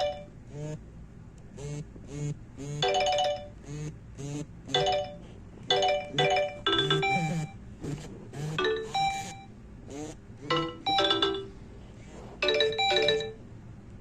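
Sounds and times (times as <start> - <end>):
mobile phone ringtone: 2.8 - 3.6, 4.7 - 7.6, 8.6 - 9.5, 10.5 - 11.6, 12.4 - 13.4.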